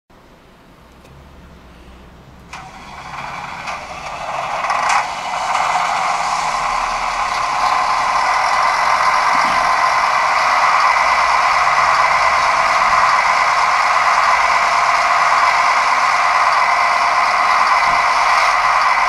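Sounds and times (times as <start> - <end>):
model train whirring rattle: 2.4 - 19.0.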